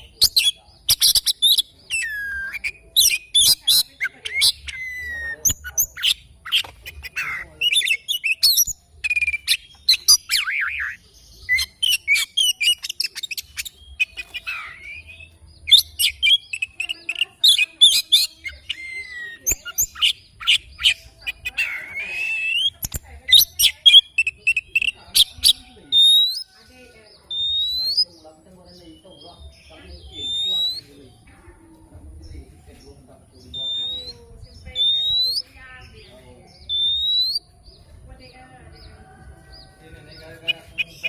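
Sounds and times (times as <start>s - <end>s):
songbird chirps and trills: 0.0s - 41.0s.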